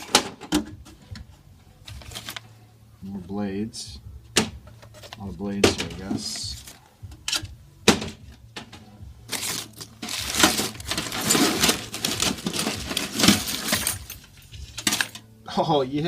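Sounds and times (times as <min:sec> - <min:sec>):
tools rattling in a toolbox: 0:08.6 - 0:15.3.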